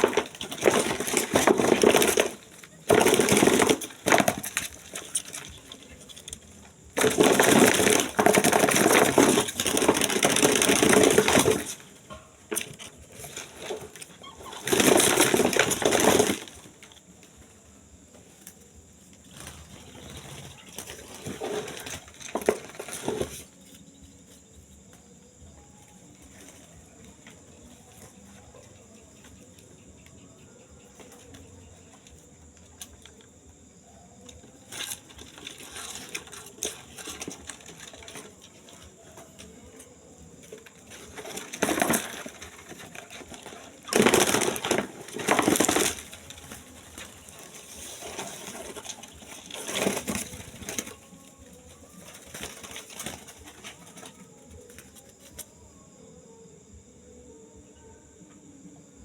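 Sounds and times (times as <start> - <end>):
night insects chirring: 0.0 - 59.0
bird wings flapping: 52.0 - 55.4.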